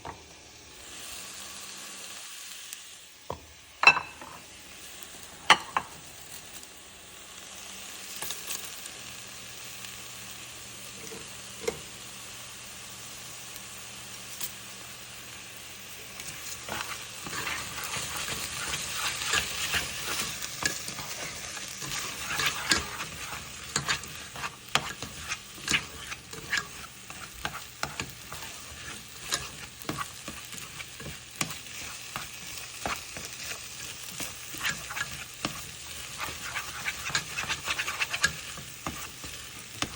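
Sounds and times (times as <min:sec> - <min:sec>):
rice sizzling in a hot pan: 0:00.0 - 0:39.9
spatula scraping and knocking pan: 0:16.2 - 0:39.9.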